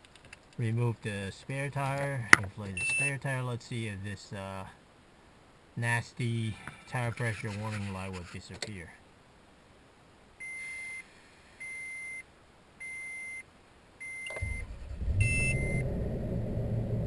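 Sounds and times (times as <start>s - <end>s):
dashboard chime beeping: 14.1s - 15.8s
engine cranking and idling: 14.3s - 17.0s.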